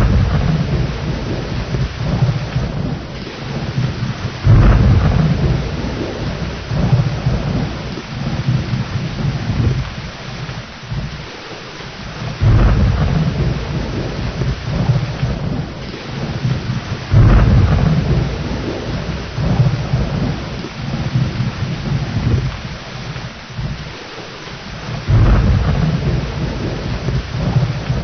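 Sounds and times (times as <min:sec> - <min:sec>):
heavy rain: 0:00.0 - 0:28.0
thunder rumbling: 0:00.0 - 0:28.0.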